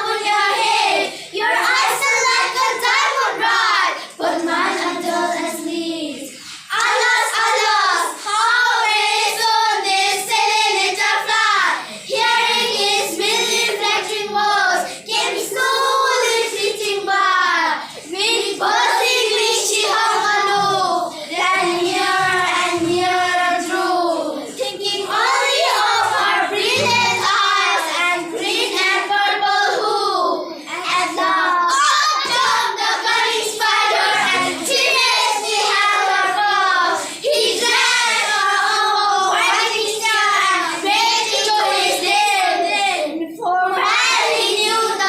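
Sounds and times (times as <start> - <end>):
children chanting a poem: 0.0 - 45.0.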